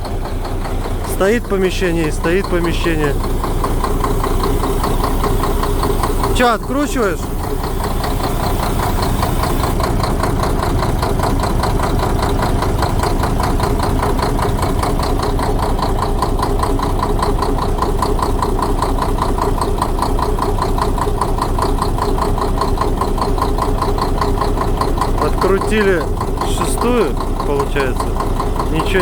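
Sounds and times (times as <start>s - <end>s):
diesel truck engine idling: 0.0s - 29.0s
rhythmic engine knock: 0.0s - 29.0s.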